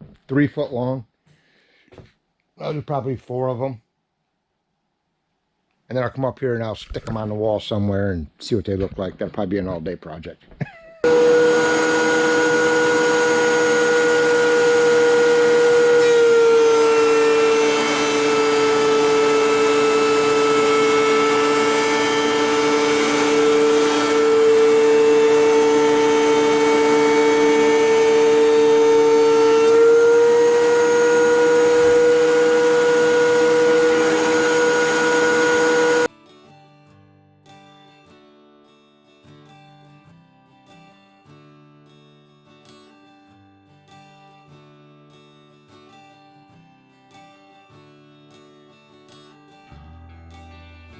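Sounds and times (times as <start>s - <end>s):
power tool motor whining: 11.0s - 36.1s.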